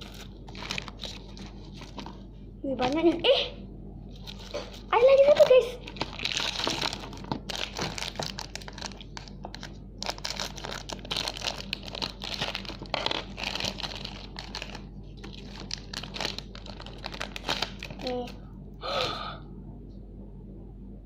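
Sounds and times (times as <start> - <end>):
packaging crinkling and tearing: 0.0 - 2.2, 4.2 - 18.4.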